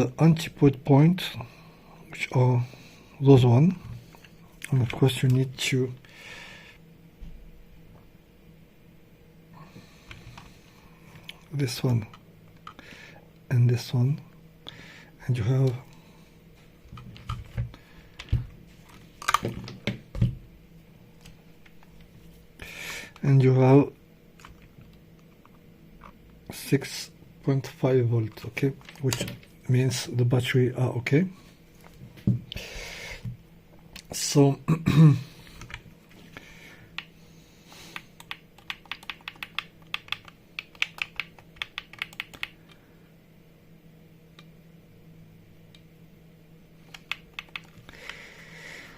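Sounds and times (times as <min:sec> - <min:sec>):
quiet handling noise: 0:02.1 - 0:06.0, 0:09.7 - 0:14.4, 0:15.3 - 0:32.6
button clicking rapidly: 0:38.2 - 0:42.5, 0:46.9 - 0:47.8.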